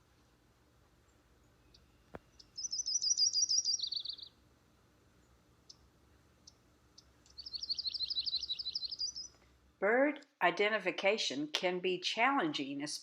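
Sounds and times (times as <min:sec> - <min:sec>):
songbird trilling: 0:01.7 - 0:04.4, 0:06.4 - 0:09.3.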